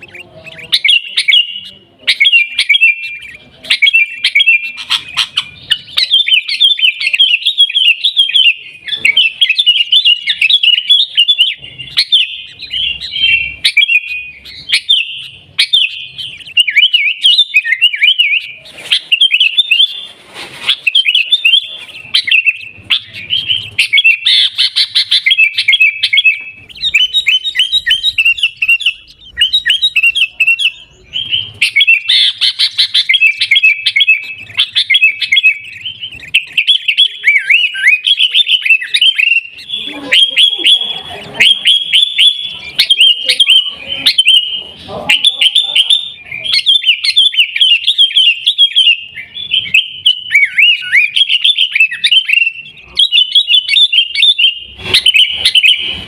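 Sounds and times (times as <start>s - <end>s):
bird singing bright chirps: 0.0s - 56.0s.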